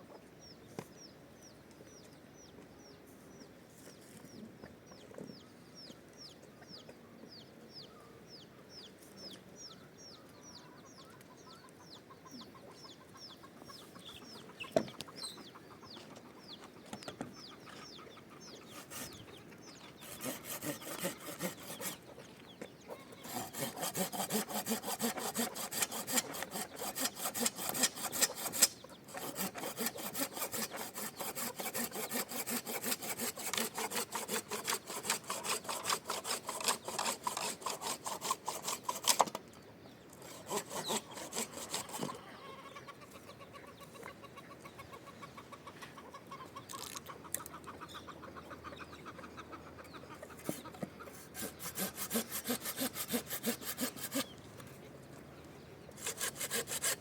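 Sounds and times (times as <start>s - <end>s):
chickens chirping: 0.0s - 57.0s
rhythmic rasping scraping: 20.0s - 22.0s, 23.2s - 39.4s, 40.2s - 42.1s, 51.4s - 54.3s, 56.0s - 57.0s.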